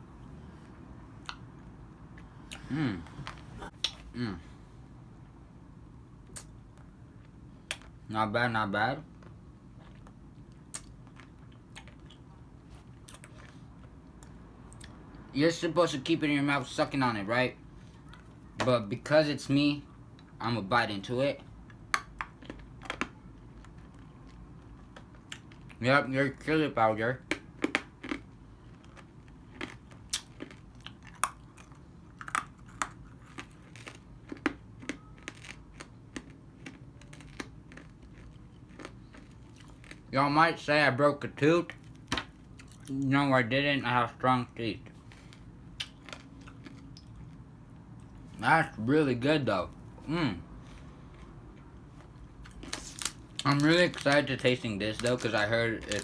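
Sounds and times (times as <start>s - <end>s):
mouth clicks and smacks: 2.5s - 4.1s, 10.6s - 11.0s
crunching hard candy: 27.2s - 40.1s, 51.6s - 56.0s.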